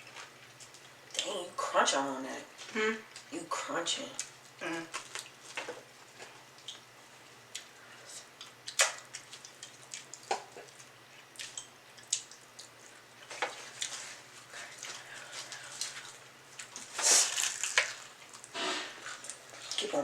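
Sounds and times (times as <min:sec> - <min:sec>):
low steady hum: 0:00.0 - 0:20.0
crunching crispy chicken: 0:04.9 - 0:05.8, 0:14.9 - 0:19.8.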